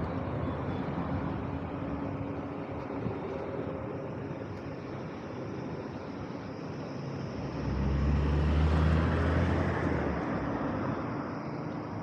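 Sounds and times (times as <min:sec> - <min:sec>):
city traffic noise: 0:00.0 - 0:12.0
vehicle engine passing by: 0:07.4 - 0:11.4.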